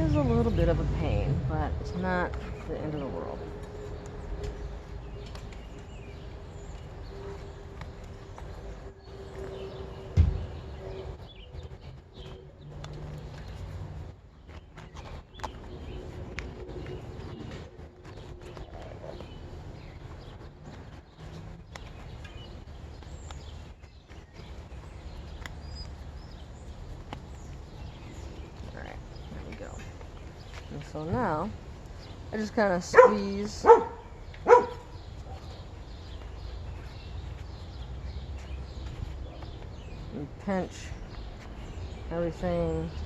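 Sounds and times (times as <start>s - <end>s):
low steady rumble: 0.0s - 11.2s
heavy low thump: 10.0s - 10.8s.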